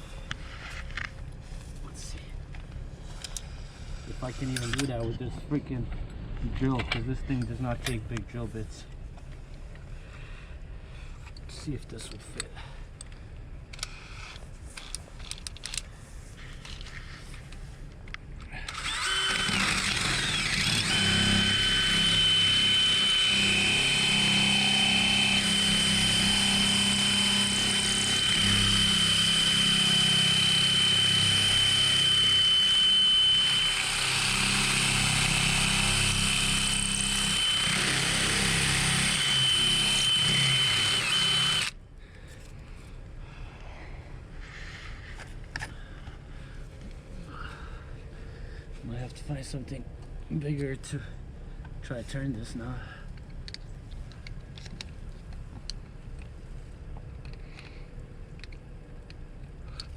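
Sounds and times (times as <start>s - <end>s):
electric drill boring into lock: 18.7s - 41.8s.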